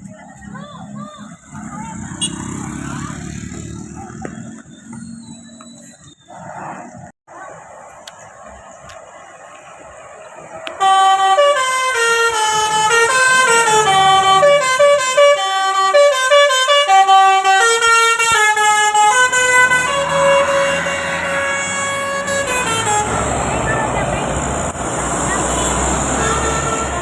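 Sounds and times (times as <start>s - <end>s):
musical air horn: 10.8s - 23.5s, 25.5s - 27.0s.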